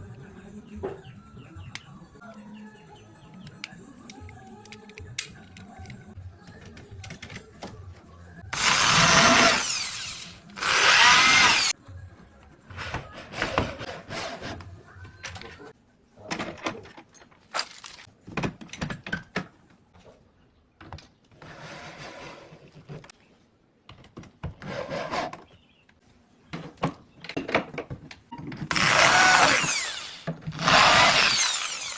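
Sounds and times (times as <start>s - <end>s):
power tool working wood: 8.6s - 11.7s, 28.7s - 31.9s.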